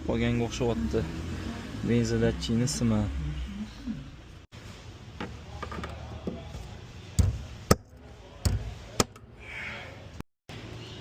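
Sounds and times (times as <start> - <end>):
loud thumps: 7.2 - 9.2
knocks and clicks on car parts: 7.2 - 9.3.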